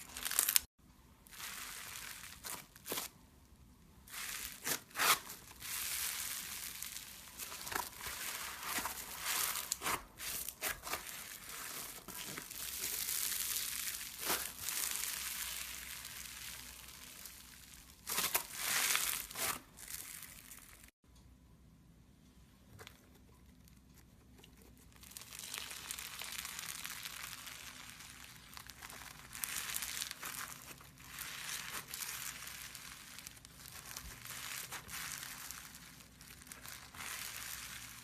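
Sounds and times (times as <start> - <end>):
crunchy slime crackling: 0.0 - 3.2, 4.0 - 21.0, 23.6 - 38.0.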